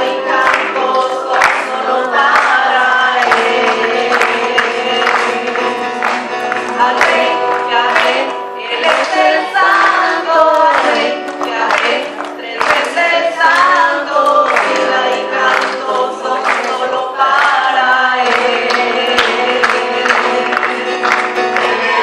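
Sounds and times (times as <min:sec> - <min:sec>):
choir singing: 0:00.0 - 0:22.0
guitar accompaniment: 0:00.0 - 0:22.0.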